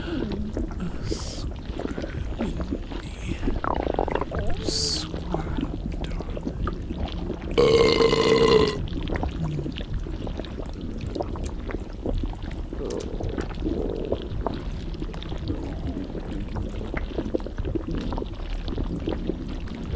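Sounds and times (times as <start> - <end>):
wet stomach gurgling: 0.0 - 19.9
loud pitched belch: 7.6 - 8.8.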